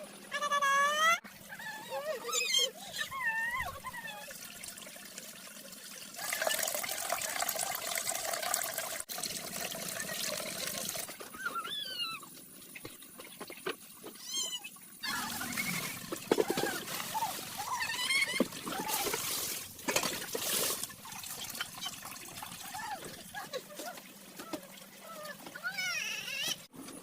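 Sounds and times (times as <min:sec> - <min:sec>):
water trickling and splashing: 0:00.0 - 0:26.7
high wavering animal calls: 0:00.3 - 0:04.4, 0:11.3 - 0:12.3, 0:14.2 - 0:19.2.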